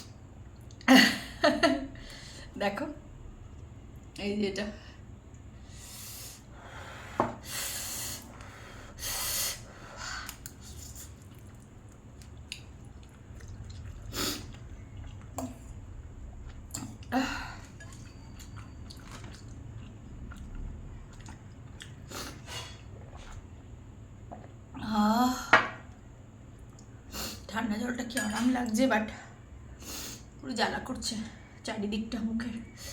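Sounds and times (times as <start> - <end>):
person chewing noodles: 10.2 - 23.4.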